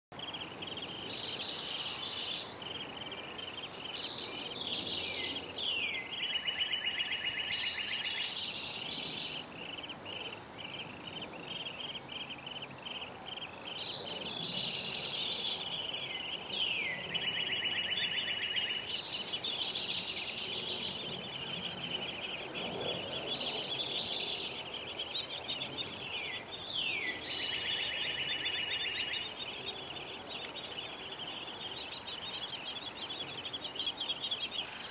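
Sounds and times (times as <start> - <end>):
faint high chirring: 8.9 - 34.9.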